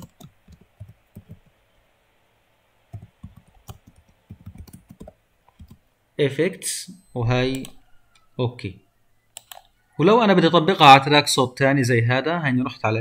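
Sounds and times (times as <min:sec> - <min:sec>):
typing on a keyboard: 0:00.0 - 0:01.5, 0:02.9 - 0:05.8, 0:09.4 - 0:09.7.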